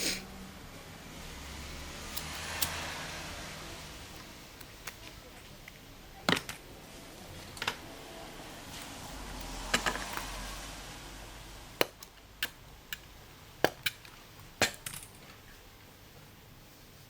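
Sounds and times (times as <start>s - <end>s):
car passing on wet road: 1.3s - 4.0s, 8.1s - 11.5s.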